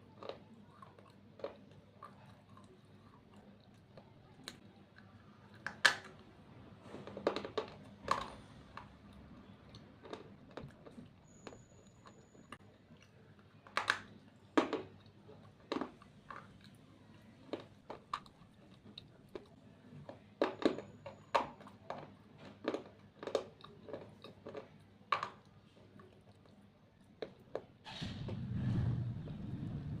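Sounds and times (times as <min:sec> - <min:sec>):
gritty chewing: 0:00.0 - 0:27.8
crunching of chewed slate: 0:06.8 - 0:27.7
low rumble: 0:28.1 - 0:30.0.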